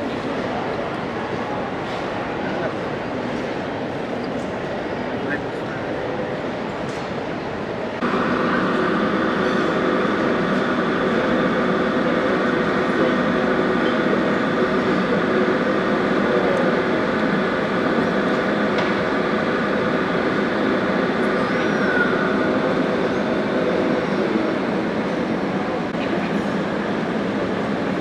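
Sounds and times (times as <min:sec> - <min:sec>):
noisy rush: 0:07.4 - 0:28.0.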